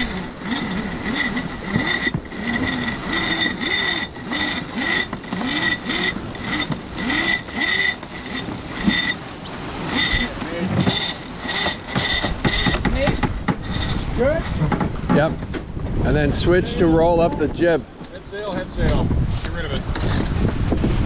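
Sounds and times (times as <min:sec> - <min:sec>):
winch pawls clicking: 0:00.0 - 0:14.0, 0:18.0 - 0:18.7.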